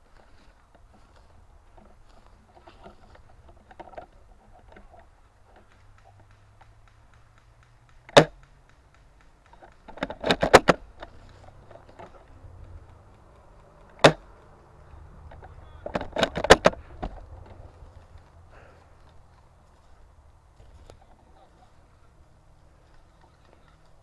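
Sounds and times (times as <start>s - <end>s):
rapid sharp clicks: 2.9s - 21.0s
airsoft gun cracks: 5.4s - 19.5s.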